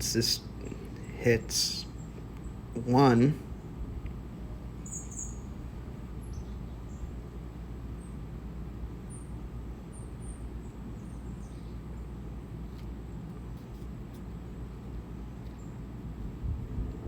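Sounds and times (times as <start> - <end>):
low background rumble: 0.0 - 17.0
high bird chirps: 4.8 - 5.5.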